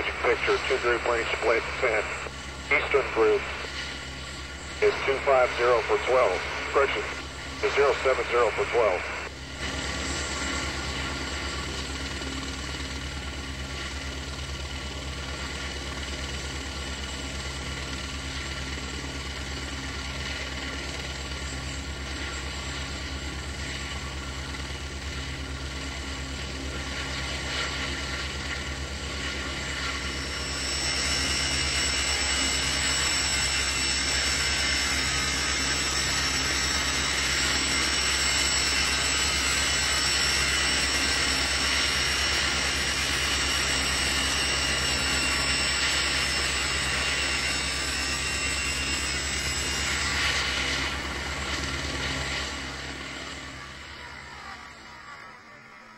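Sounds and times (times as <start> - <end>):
higher whine: 0.0 - 10.7
helicopter rotor chop: 0.0 - 55.6.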